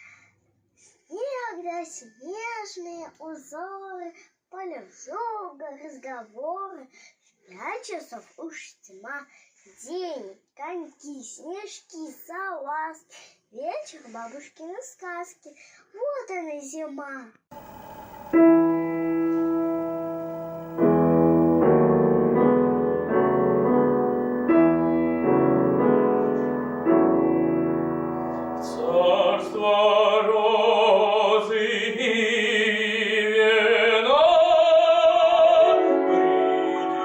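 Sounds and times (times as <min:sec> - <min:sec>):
piano chords: 0:17.5 - 0:32.1, 0:35.0 - 0:37.0
classical singing voice with vibrato: 0:17.6 - 0:37.0.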